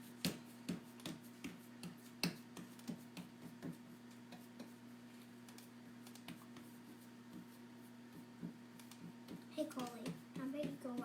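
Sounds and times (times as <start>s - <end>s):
low electrical hum: 0.0s - 11.0s.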